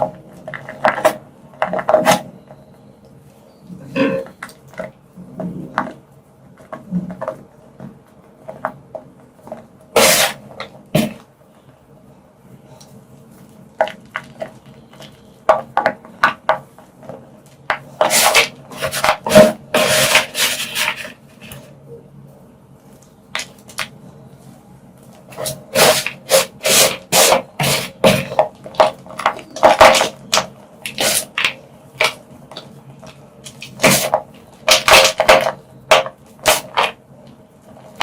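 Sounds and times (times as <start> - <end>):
chalk crunching and snapping: 25.2 - 35.5.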